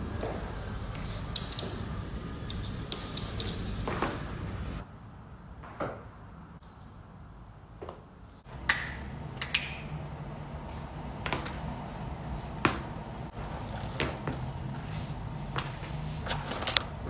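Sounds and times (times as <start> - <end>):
low background hum: 0.0 - 17.0.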